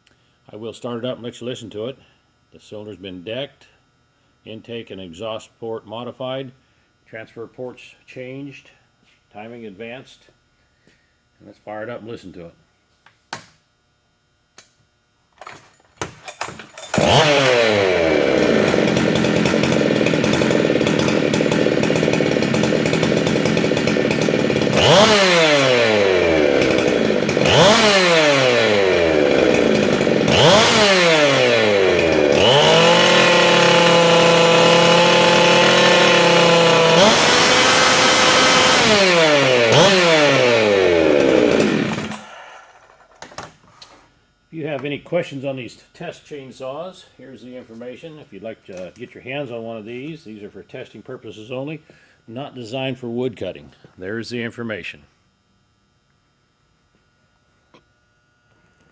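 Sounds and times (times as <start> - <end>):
chainsaw revving: 16.8 - 43.0.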